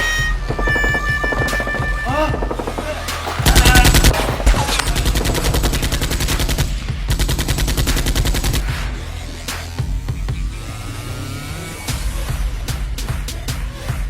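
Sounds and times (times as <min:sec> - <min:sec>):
automatic gunfire: 0:03.2 - 0:08.6.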